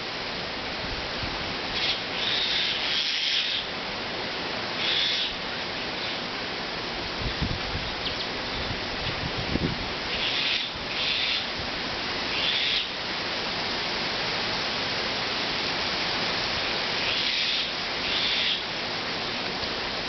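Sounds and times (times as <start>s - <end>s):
strong wind blowing: 7.0s - 10.1s.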